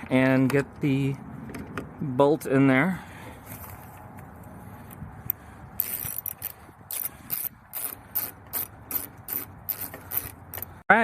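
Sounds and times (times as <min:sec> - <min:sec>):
socket ratchet wrench clicking: 0:05.3 - 0:10.7.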